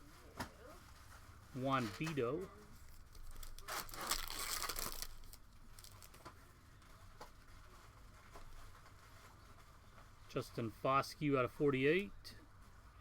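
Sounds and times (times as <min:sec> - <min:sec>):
plastic packaging crinkling: 0:02.8 - 0:06.3.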